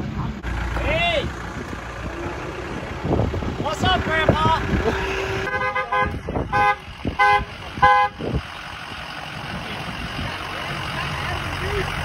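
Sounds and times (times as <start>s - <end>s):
vehicle engine running: 0.0s - 12.0s
vehicle horn honking: 5.0s - 8.3s.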